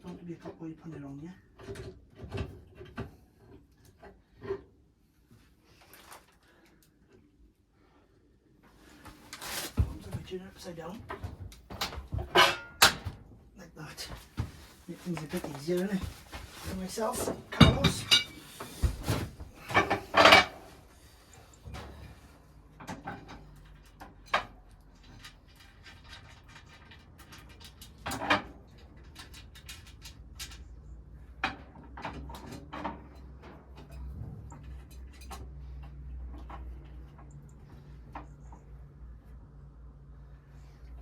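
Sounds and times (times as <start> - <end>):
metal stove clinking: 12.3 - 13.0, 17.5 - 18.5.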